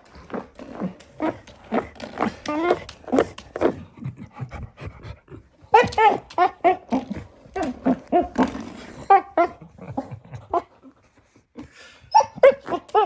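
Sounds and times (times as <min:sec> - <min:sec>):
puppy yapping: 0:05.7 - 0:09.6.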